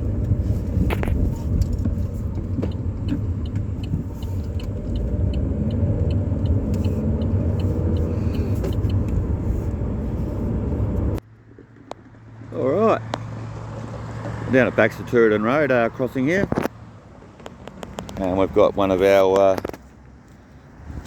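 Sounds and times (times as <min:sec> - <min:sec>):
car engine and tyres rumbling: 0:00.0 - 0:21.0
light ticking: 0:02.3 - 0:09.2.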